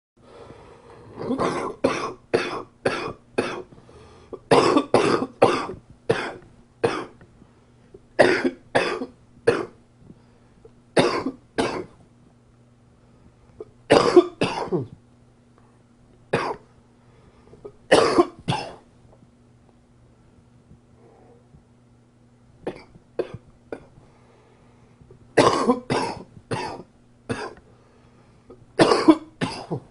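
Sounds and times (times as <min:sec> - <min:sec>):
faint steady hum: 0:00.2 - 0:29.9
man coughing: 0:01.2 - 0:03.7, 0:04.4 - 0:07.2, 0:08.2 - 0:09.7, 0:11.0 - 0:12.0, 0:13.9 - 0:15.0, 0:16.4 - 0:16.6, 0:17.9 - 0:18.8, 0:25.4 - 0:27.6, 0:28.8 - 0:29.9.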